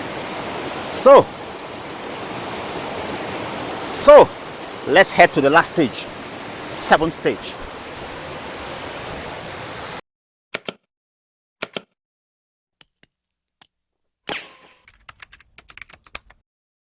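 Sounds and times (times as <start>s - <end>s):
waterfall rushing: 0.0s - 10.0s
sharp clicks: 10.6s - 10.9s, 11.6s - 12.0s, 14.8s - 16.4s.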